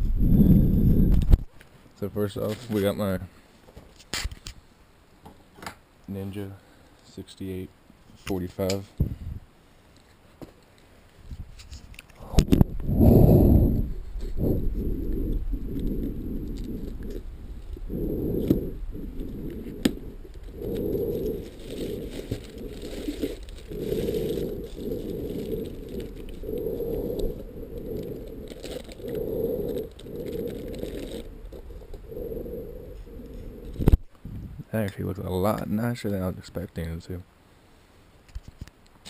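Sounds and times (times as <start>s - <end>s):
packaging rustling and crackling: 15.6s - 34.0s.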